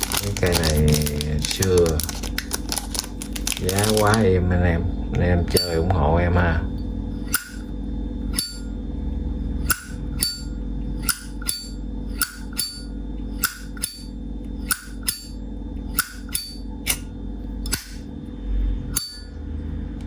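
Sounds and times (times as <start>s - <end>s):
low hum: 0.0s - 20.0s
lighter lid clinking open and shut: 11.0s - 17.1s.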